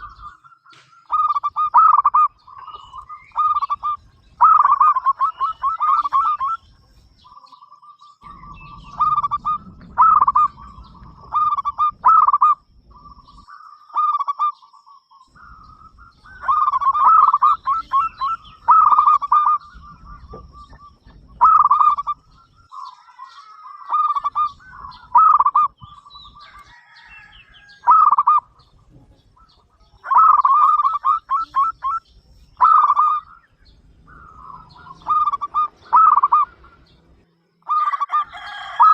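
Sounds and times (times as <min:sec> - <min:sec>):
dove cooing: 0:00.0 - 0:07.6, 0:08.2 - 0:14.7, 0:15.3 - 0:38.9.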